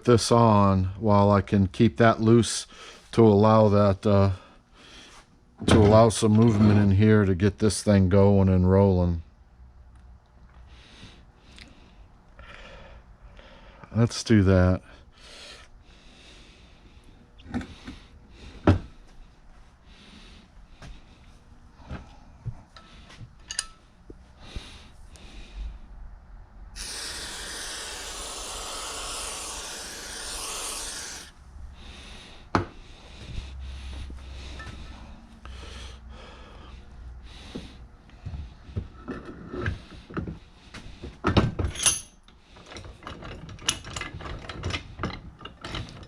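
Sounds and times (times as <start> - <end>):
metal parts clinking and tapping: 22.8 - 23.8, 41.3 - 46.0
steady hiss: 26.8 - 31.3.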